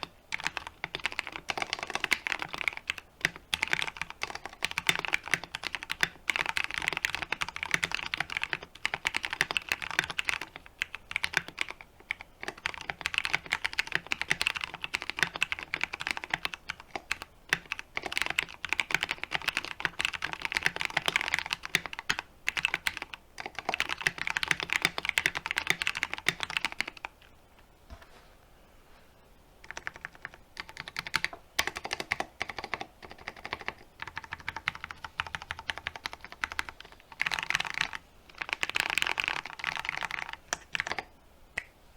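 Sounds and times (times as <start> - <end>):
fast mechanical keyboard typing: 0.0 - 27.1, 29.6 - 41.1.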